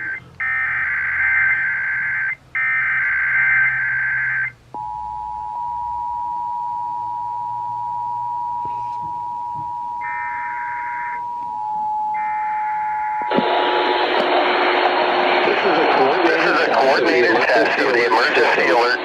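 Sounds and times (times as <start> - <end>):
two-tone attention signal: 4.8 - 13.4.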